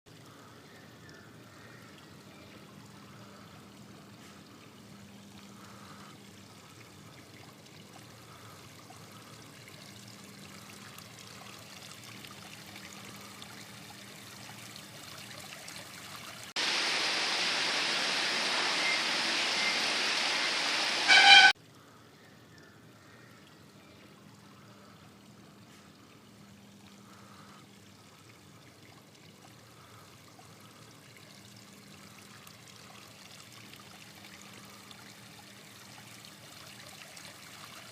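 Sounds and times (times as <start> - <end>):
fountain water trickling: 0.1 - 37.9
loud rush of water: 16.5 - 21.6.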